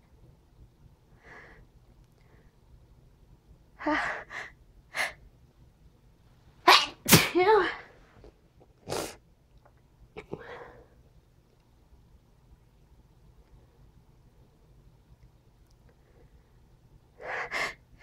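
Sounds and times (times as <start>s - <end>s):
person sneezing: 6.7s - 7.8s, 8.8s - 9.2s.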